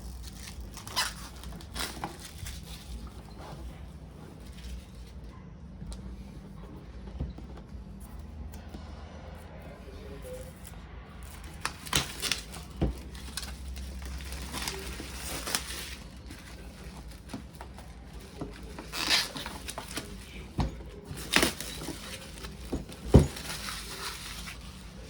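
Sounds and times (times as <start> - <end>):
packaging rustling and crinkling: 0.0 - 5.2, 10.4 - 25.0.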